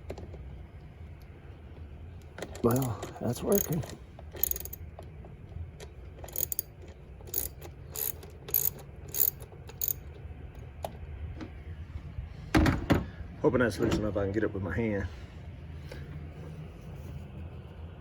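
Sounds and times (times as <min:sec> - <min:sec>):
ratchet wrench clicking: 0:02.6 - 0:04.8, 0:06.2 - 0:10.1.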